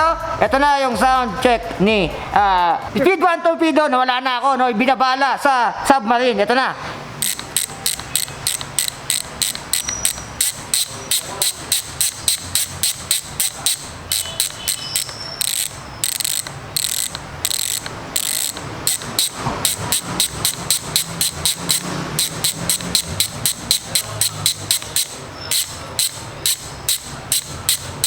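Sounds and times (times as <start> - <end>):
bicycle hub ratcheting: 7.2 - 28.0.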